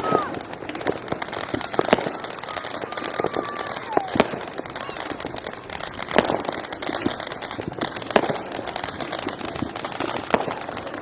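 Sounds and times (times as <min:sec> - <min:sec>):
distant firecrackers crackling: 0:00.0 - 0:11.0
loud fireworks bangs: 0:00.0 - 0:11.0.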